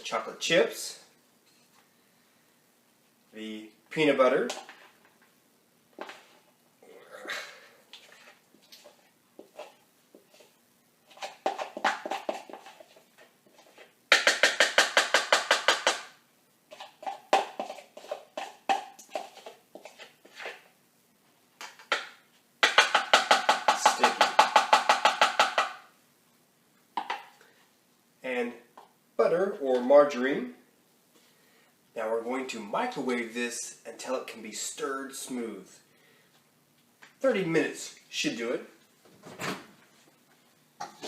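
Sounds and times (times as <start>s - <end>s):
spoon scraping a bowl: 8.0s - 13.9s, 16.7s - 20.7s.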